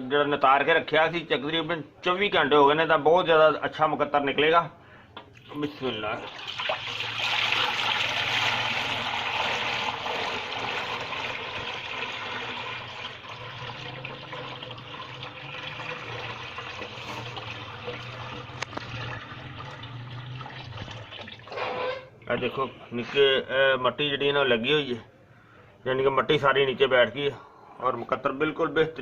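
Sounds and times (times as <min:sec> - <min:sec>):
liquid pouring: 0:05.4 - 0:22.0.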